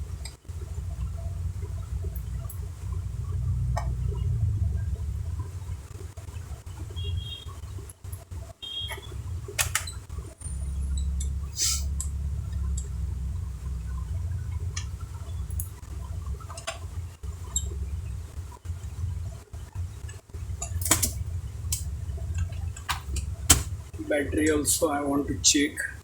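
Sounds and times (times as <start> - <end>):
steady low hum: 0.0 - 26.0
laptop parts clicking and knocking: 9.6 - 10.0.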